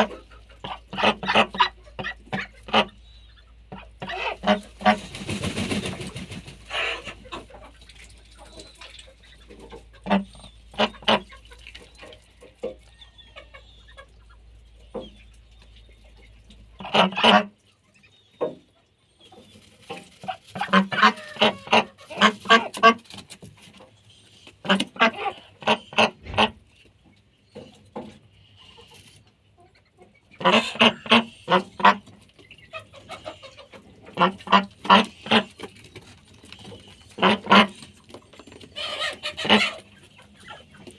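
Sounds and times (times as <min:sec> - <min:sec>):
ducks quacking: 0:00.0 - 0:15.4, 0:16.0 - 0:18.2, 0:19.9 - 0:23.2, 0:24.2 - 0:26.9, 0:28.3 - 0:40.9.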